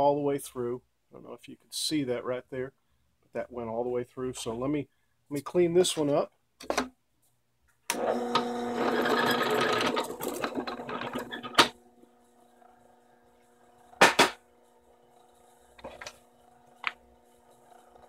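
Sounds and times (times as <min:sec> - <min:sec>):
drill bit cutting wood: 0:07.9 - 0:18.0
drill press motor humming: 0:07.9 - 0:18.0
sharp clunk: 0:14.0 - 0:14.4.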